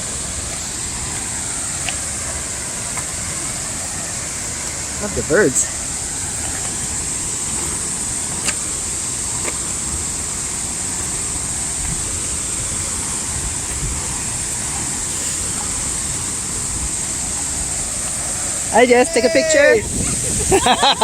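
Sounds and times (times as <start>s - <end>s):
waterfall roaring: 0.0s - 21.0s.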